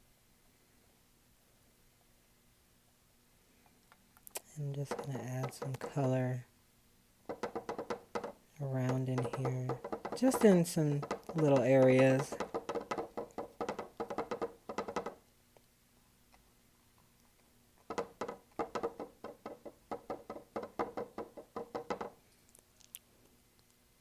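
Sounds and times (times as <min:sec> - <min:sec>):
paintbrush dabbing on canvas: 0:04.6 - 0:06.4, 0:07.3 - 0:15.2.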